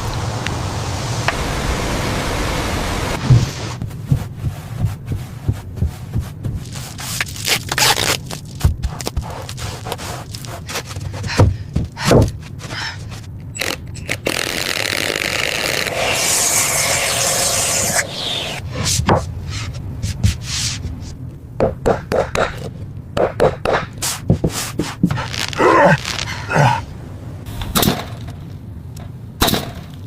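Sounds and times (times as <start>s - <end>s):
scraping and rubbing: 3.3s - 21.2s, 23.8s - 26.8s
steady hiss: 15.6s - 18.7s.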